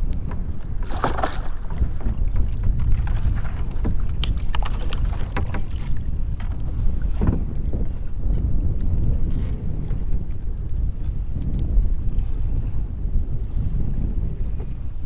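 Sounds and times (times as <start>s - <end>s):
water moving around kayak: 0.0s - 15.0s
wind rumbling on microphone: 0.0s - 15.0s
short splashes: 0.8s - 2.1s.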